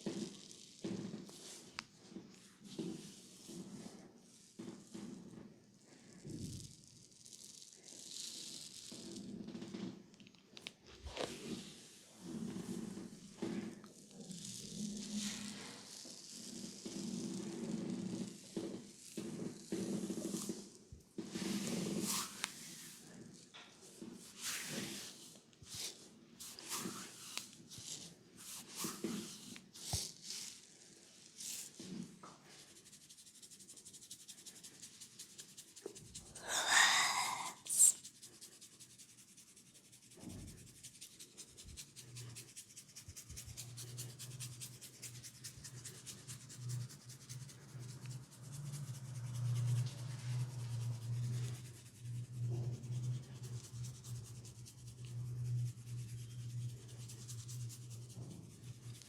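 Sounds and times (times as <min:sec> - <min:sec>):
hands rubbing hair and scalp: 0:00.1 - 0:04.0, 0:14.7 - 0:30.6, 0:31.3 - 0:59.0.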